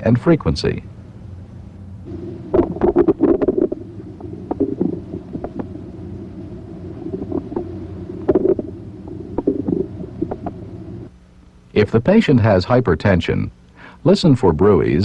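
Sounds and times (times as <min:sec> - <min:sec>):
steady low hum: 0:00.0 - 0:15.0
bowel clicks and gurgles: 0:02.5 - 0:05.7, 0:07.0 - 0:10.6.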